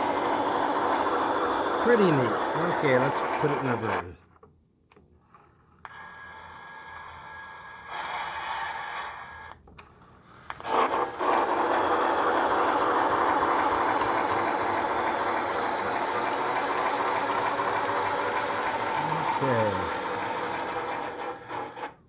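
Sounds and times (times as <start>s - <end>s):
model train motor whirring and rattling: 0.0s - 3.8s, 10.4s - 22.0s.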